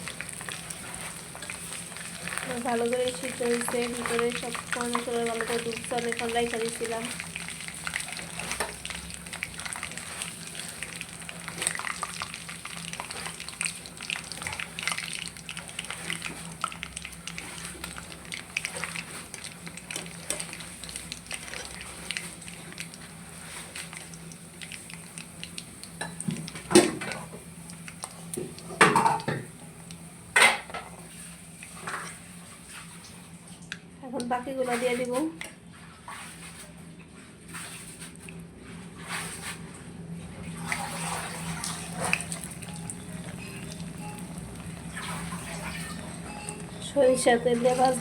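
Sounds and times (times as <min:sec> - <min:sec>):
chicken sizzling in hot oil: 0:00.0 - 0:30.3, 0:41.4 - 0:48.0.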